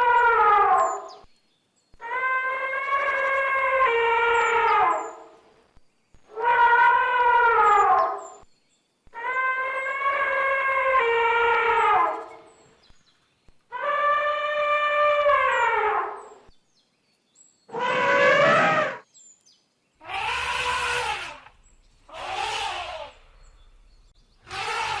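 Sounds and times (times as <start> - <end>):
elephant trumpeting: 17.7 - 19.0, 20.0 - 23.3, 24.4 - 25.0.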